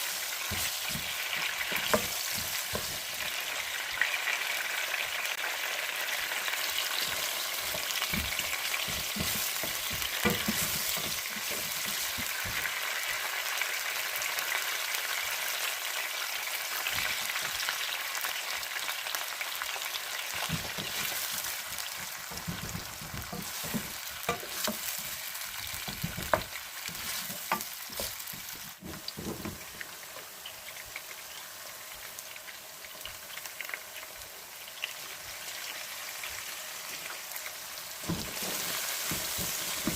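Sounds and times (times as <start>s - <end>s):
food sizzling in a pan: 0.0s - 39.9s
spoon scraping a pan: 0.3s - 3.4s, 6.7s - 12.7s, 20.4s - 29.5s, 38.1s - 39.9s.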